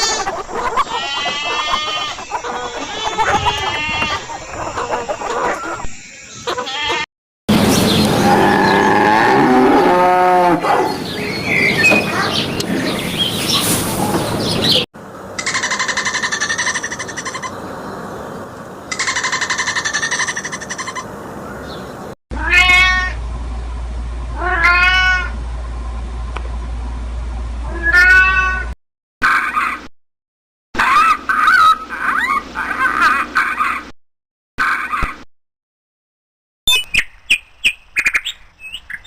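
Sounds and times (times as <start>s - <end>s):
cats meowing: 0.0s - 4.2s, 22.4s - 23.2s, 24.4s - 25.3s, 27.7s - 28.7s.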